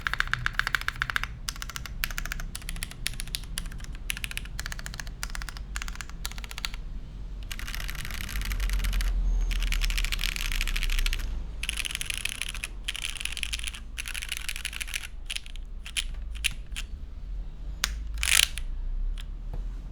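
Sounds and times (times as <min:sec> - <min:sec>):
mechanical keyboard typing: 0:00.0 - 0:17.0, 0:17.8 - 0:19.3.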